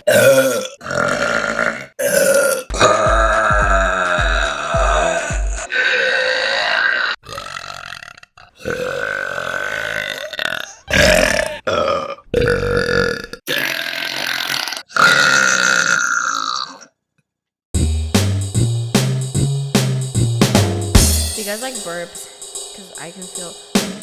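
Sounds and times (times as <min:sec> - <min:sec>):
person burping: 0:00.0 - 0:16.9
music with a steady beat: 0:02.7 - 0:05.7, 0:17.8 - 0:24.0.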